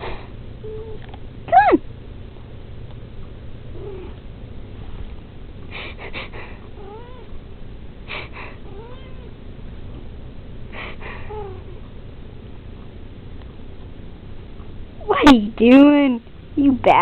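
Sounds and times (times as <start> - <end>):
cat mewing: 8.7 - 9.3.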